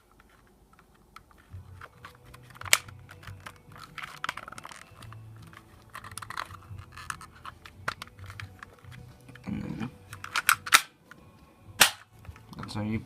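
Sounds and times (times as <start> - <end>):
plastic pistol parts clicking: 0.1 - 9.4, 10.1 - 11.0.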